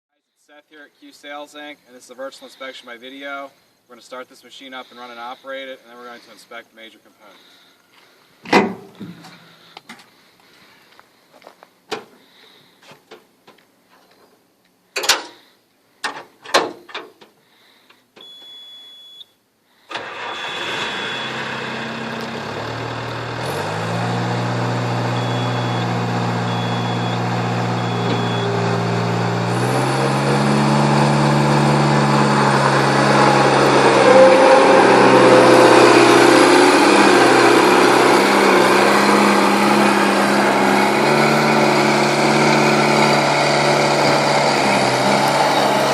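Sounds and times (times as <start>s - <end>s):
short beep tone: 18.2s - 19.4s, 25.1s - 28.8s
diesel engine starting and running: 19.9s - 45.9s.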